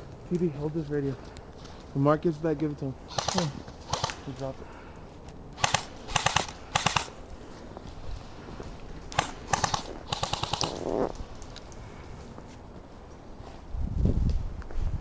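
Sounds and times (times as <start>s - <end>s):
airsoft guns firing bursts: 3.1s - 4.4s, 5.6s - 7.2s, 9.1s - 10.9s.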